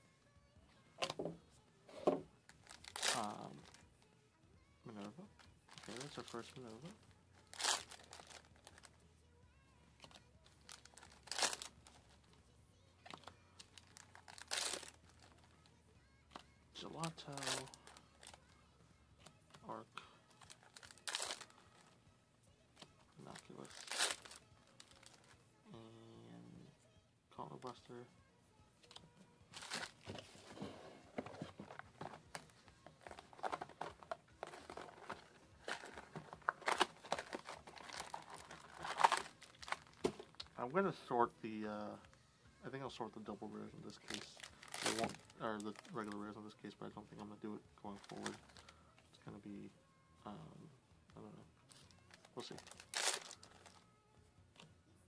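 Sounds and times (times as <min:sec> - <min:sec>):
foil wrapper crinkling: 0:02.6 - 0:03.8, 0:05.7 - 0:08.9, 0:10.0 - 0:12.1, 0:13.3 - 0:15.7, 0:17.1 - 0:18.5, 0:20.3 - 0:21.6, 0:23.2 - 0:25.3, 0:31.6 - 0:40.5, 0:43.9 - 0:46.3, 0:47.9 - 0:48.7, 0:51.7 - 0:53.8.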